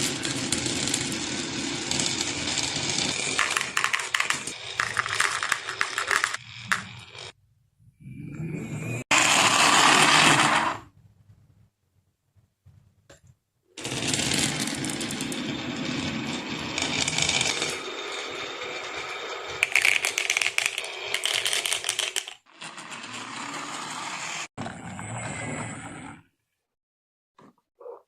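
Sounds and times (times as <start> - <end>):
marbles rolling down wooden run: 0.1 - 7.3, 13.8 - 23.8.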